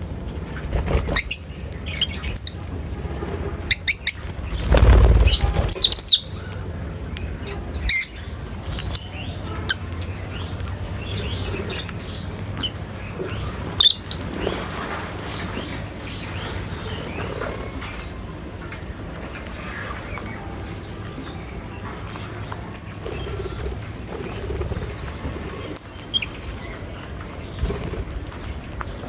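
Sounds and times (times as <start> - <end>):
wings rustling flutter: 0.2 - 6.7
lovebirds chirping: 0.8 - 2.8, 3.6 - 18.3, 19.5 - 29.0.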